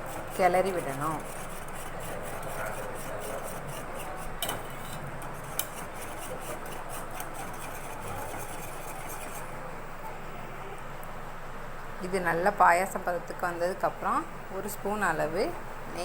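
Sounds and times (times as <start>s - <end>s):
ladle scraping a cooking pot: 0.0s - 9.6s.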